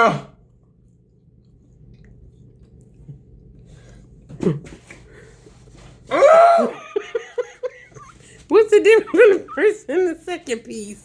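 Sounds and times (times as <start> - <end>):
person crying out: 6.1 - 7.0.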